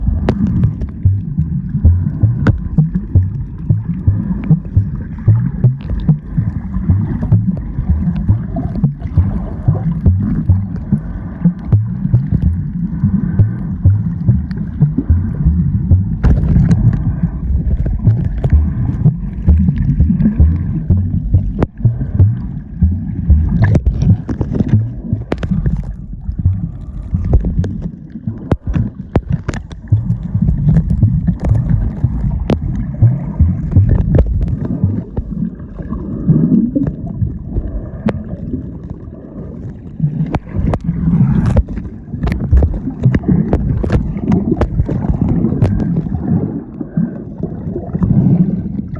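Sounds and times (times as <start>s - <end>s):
muffled underwater water rumble: 0.0s - 48.9s
sharp clicks and knocks: 13.4s - 26.6s, 27.2s - 35.3s, 40.3s - 46.0s.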